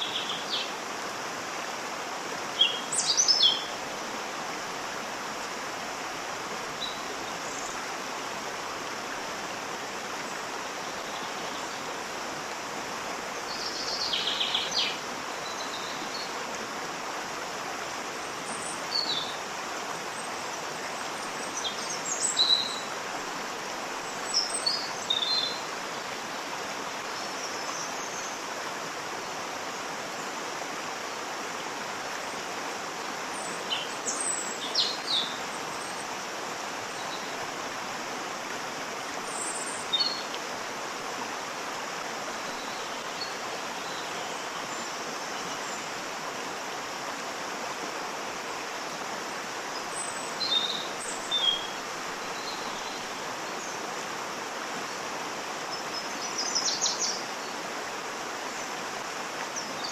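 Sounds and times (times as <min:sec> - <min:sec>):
waterfall rushing: 0:00.0 - 0:59.9
birds chirping: 0:49.8 - 0:53.8.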